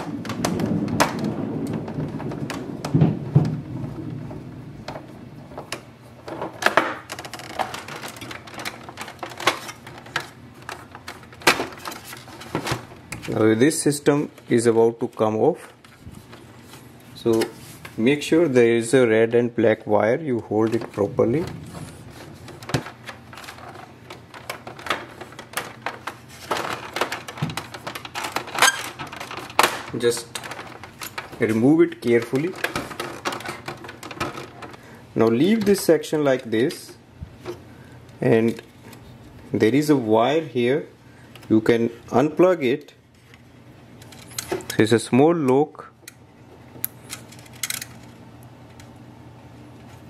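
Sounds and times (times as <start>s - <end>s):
plastic printer parts clicking: 5.7s - 13.4s, 20.6s - 36.8s, 46.8s - 48.9s.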